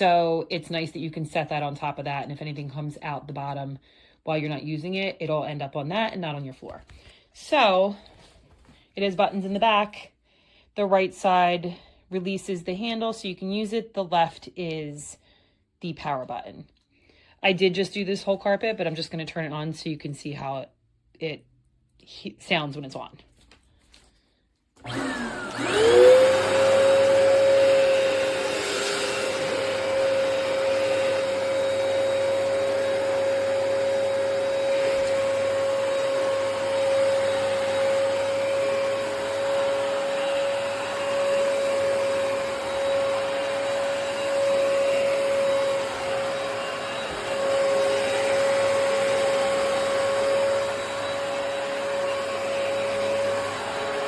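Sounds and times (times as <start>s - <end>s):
carpet cleaner motor whine: 24.8s - 54.0s.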